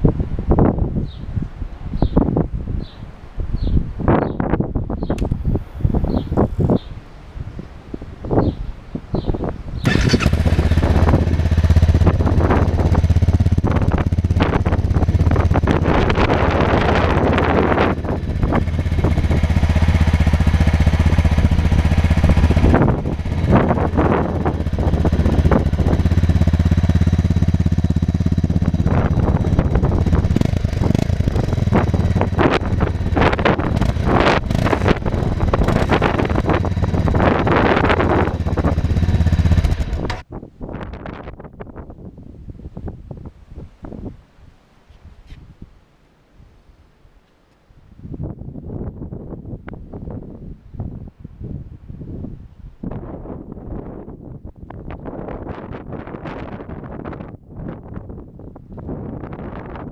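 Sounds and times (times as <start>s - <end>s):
motorcycle engine idling and revving: 5.0s - 6.9s, 9.2s - 40.3s.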